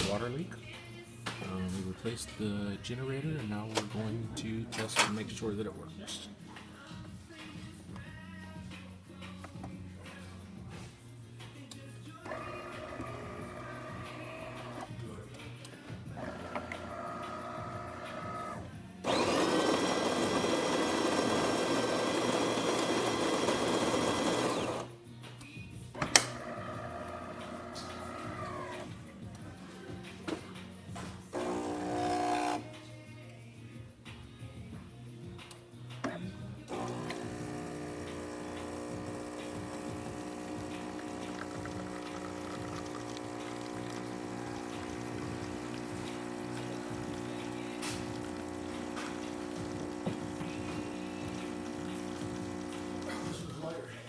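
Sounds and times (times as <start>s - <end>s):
coffee grinder grinding beans: 12.2s - 14.8s, 16.2s - 24.9s, 26.4s - 28.9s, 31.4s - 32.7s, 36.7s - 53.4s
espresso machine pump humming: 12.3s - 14.9s, 16.2s - 24.9s, 26.3s - 28.9s, 31.3s - 32.7s, 36.7s - 53.4s
water pouring: 40.2s - 53.3s.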